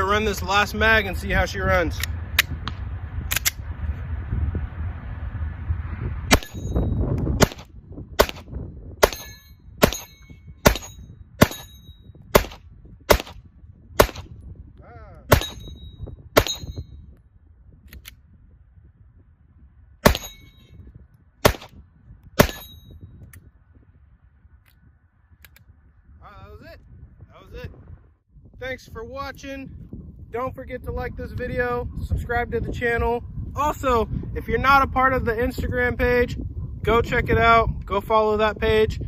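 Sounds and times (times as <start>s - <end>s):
semi-automatic gunshots: 7.4s - 11.6s, 12.3s - 13.4s, 14.0s - 14.3s, 21.4s - 21.7s, 22.4s - 22.6s.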